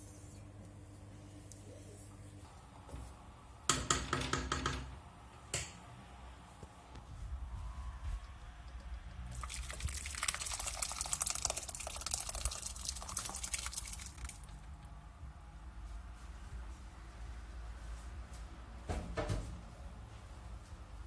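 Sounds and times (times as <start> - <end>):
liquid pouring into a pot: 9.3 - 14.8.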